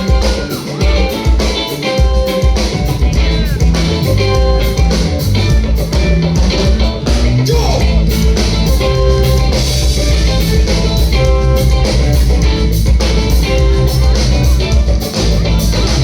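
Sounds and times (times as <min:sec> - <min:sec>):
guitar: 0:00.0 - 0:16.0
live band playing: 0:00.0 - 0:16.0
steady drum beat: 0:00.0 - 0:16.0.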